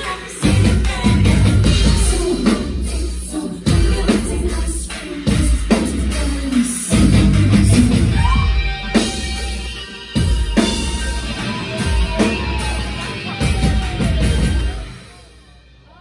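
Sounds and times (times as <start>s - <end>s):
live rock band playing: 0.0s - 15.9s
long held guitar tone: 7.5s - 15.1s.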